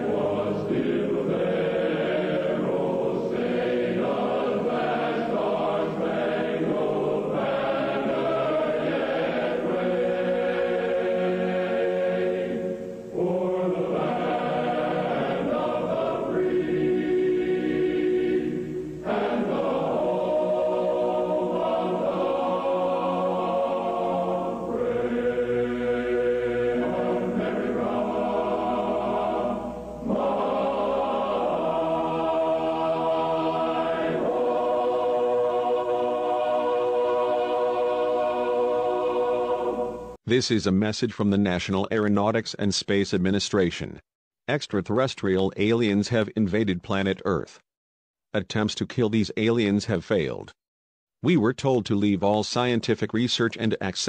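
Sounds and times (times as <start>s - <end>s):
choir singing held chords: 0.0s - 40.2s.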